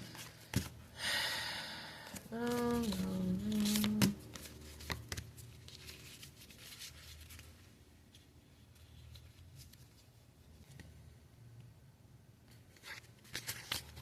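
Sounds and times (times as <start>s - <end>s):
trading cards rustling: 2.0s - 10.9s, 12.7s - 14.0s.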